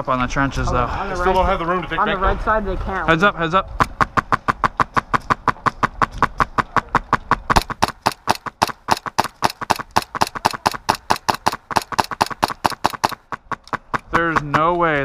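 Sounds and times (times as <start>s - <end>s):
airsoft gun firing: 6.6s - 14.1s.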